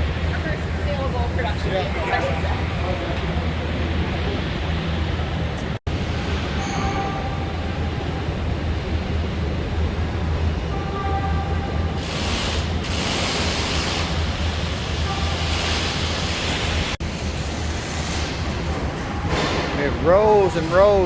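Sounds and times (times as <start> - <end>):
broad rushing noise: 11.7 - 21.0
loud hiss: 12.0 - 17.0.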